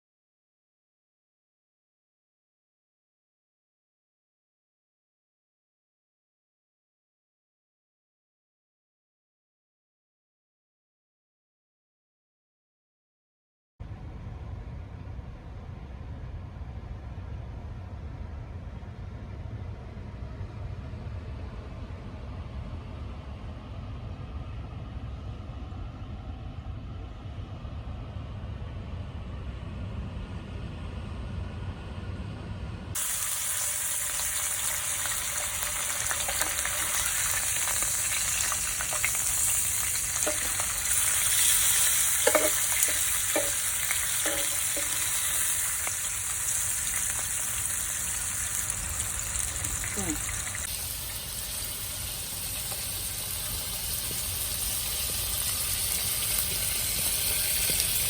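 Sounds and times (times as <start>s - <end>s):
steady low rumble: 13.8s - 33.0s
food sizzling in frying: 33.0s - 58.0s.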